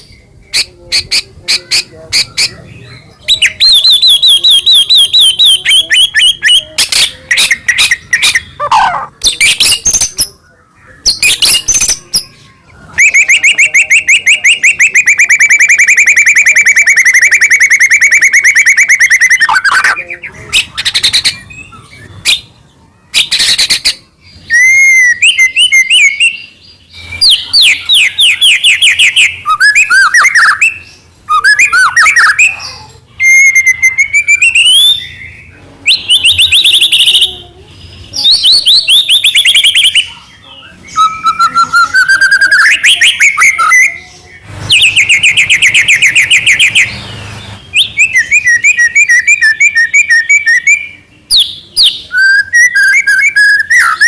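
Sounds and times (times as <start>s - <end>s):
songbird singing trills and whistles: 0.0s - 54.0s.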